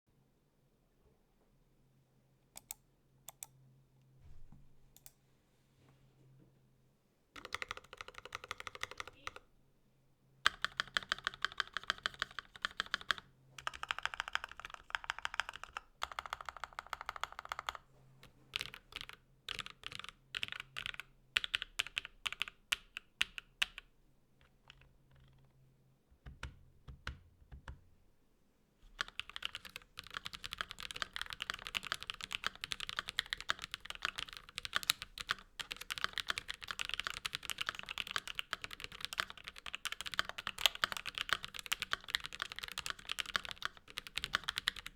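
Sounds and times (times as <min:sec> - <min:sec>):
mechanical keyboard typing: 0:07.4 - 0:09.4, 0:10.5 - 0:17.8, 0:18.5 - 0:25.4, 0:28.9 - 0:44.9.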